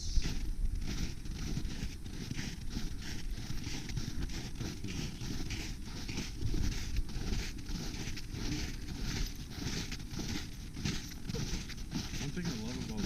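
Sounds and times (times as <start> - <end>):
footsteps on snow and ice: 0.0 - 13.0.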